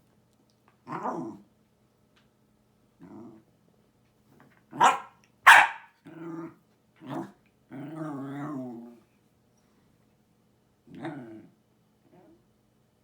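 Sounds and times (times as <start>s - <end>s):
dog grumbling and growling: 0.9s - 1.5s, 3.0s - 3.5s, 6.0s - 9.0s, 10.9s - 12.4s.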